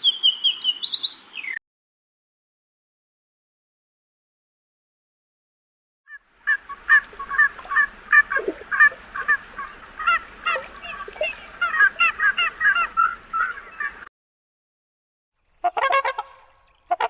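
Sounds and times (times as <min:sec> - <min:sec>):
geese honking: 0:06.4 - 0:14.0, 0:15.6 - 0:17.0.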